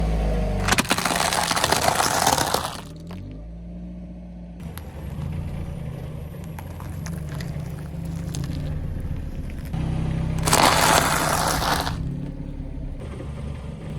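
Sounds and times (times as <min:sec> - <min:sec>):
dense crunching and cracking: 0:00.6 - 0:03.3, 0:05.8 - 0:09.8, 0:10.4 - 0:12.9.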